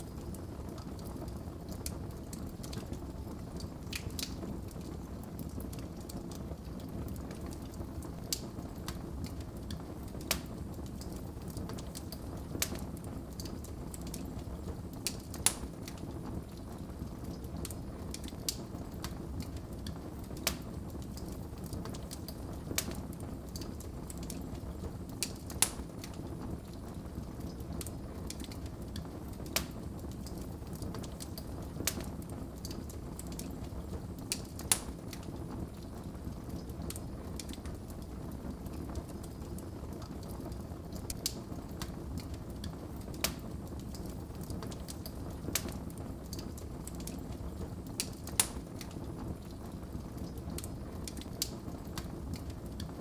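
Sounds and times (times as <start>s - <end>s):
fire flames rumbling: 0.0s - 53.0s
logs crackling and popping: 0.0s - 53.0s.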